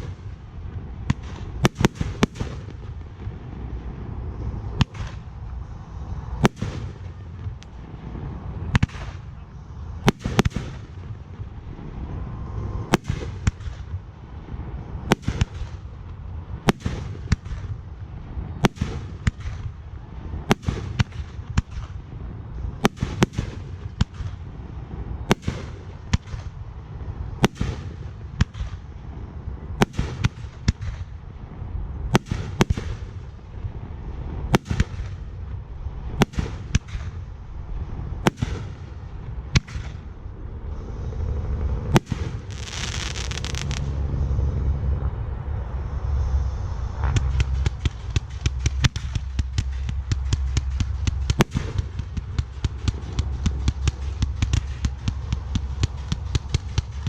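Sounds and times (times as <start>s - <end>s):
continuous low rumble: 0.0s - 57.0s
fireworks shells bursting: 41.9s - 43.9s.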